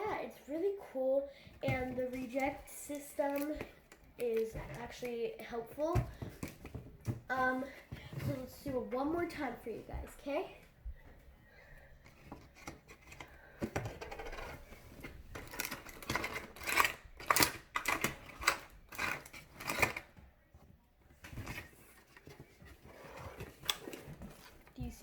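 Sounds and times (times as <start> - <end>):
paper and cardboard crinkling: 13.8 - 20.2, 21.1 - 25.0.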